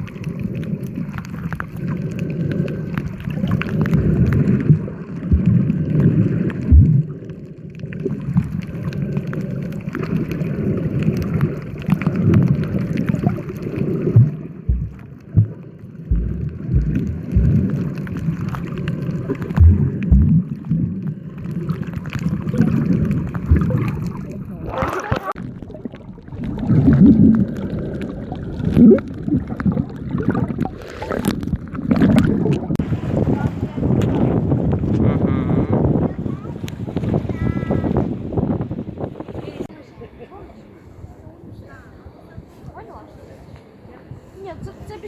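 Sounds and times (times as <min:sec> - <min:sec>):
wind buffeting microphone: 0:03.1 - 0:07.1, 0:14.1 - 0:18.3, 0:19.4 - 0:21.3, 0:22.4 - 0:27.6, 0:28.2 - 0:39.7.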